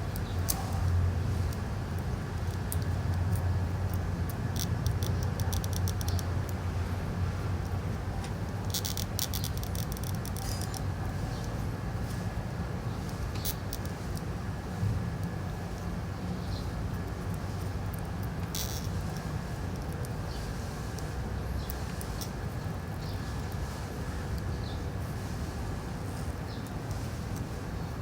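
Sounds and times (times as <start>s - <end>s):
steady low hum: 0.0s - 28.0s
small metal parts clicking and rattling: 0.1s - 6.4s, 7.6s - 11.4s, 12.9s - 14.3s, 16.4s - 24.5s.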